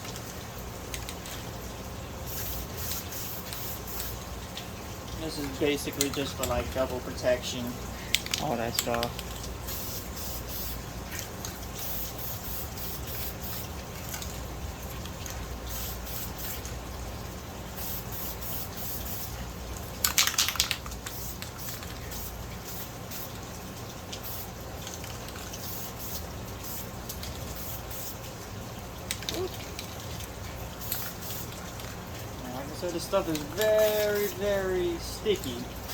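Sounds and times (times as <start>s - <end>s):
steady low hum: 0.0s - 20.2s
oil spray hiss: 2.3s - 4.2s, 9.7s - 10.8s, 11.8s - 13.7s, 15.7s - 16.7s, 17.8s - 19.4s, 21.1s - 23.4s, 24.2s - 24.5s, 25.6s - 26.9s, 27.6s - 28.2s, 30.8s - 31.6s, 33.6s - 34.6s.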